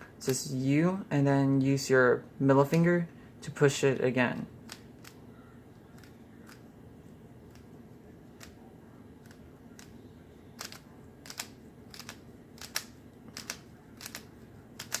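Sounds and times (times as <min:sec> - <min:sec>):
puzzle cube clicking: 0:10.6 - 0:15.0.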